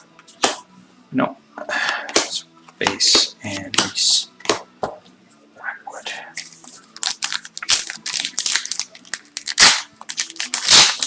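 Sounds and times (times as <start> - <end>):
foil wrapper crinkling and tearing: 6.4 - 11.0.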